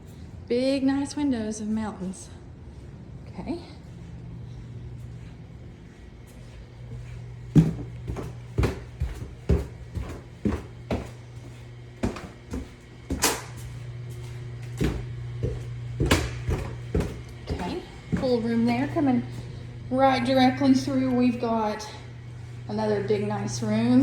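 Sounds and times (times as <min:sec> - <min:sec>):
low hum: 0:00.0 - 0:24.0
footsteps on hard floor: 0:05.0 - 0:19.5.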